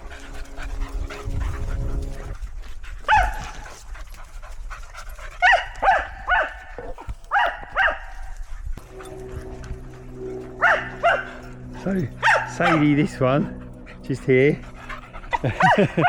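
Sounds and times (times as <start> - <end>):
low steady hum: 0.0 - 16.0
dog barking with high yelps: 3.1 - 3.6, 5.4 - 8.1, 10.5 - 11.4, 12.2 - 12.8, 15.2 - 16.0.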